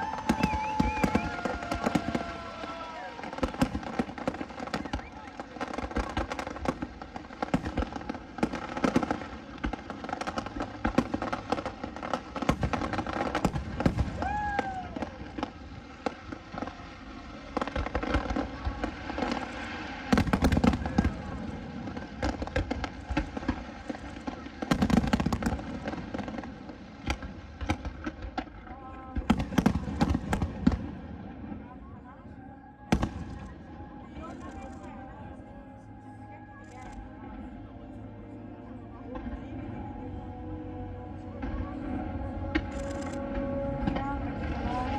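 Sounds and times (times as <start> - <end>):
deep fireworks booms: 0.0 - 35.4
fireworks bangs and crackles: 0.0 - 38.0, 38.9 - 44.9.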